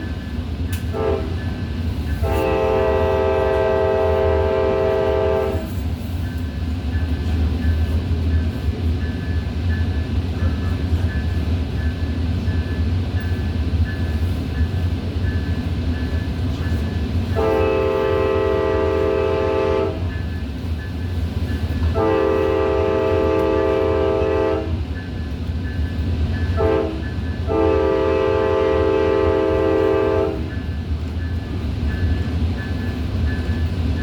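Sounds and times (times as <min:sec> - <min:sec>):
train rumbling on tracks: 0:00.0 - 0:34.0
train horn blasts: 0:00.8 - 0:05.9, 0:17.3 - 0:20.2, 0:21.8 - 0:24.9, 0:26.5 - 0:30.7.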